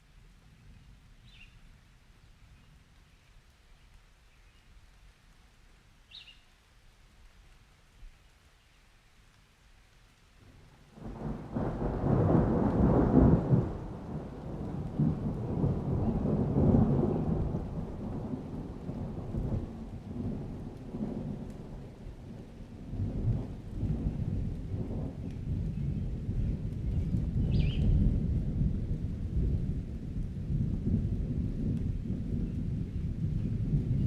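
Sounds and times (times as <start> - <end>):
thunder rumbling: 10.9 - 34.0.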